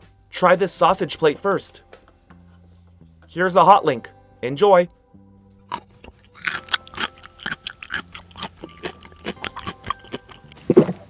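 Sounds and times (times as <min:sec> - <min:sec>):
chewing and munching: 0:05.6 - 0:11.0.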